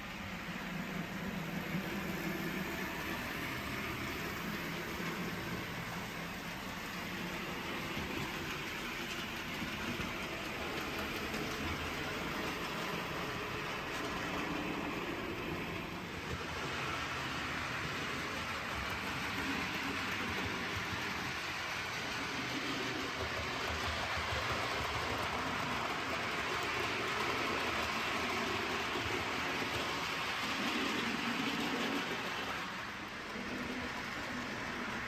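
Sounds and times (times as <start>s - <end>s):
model train running on track: 0.0s - 35.0s.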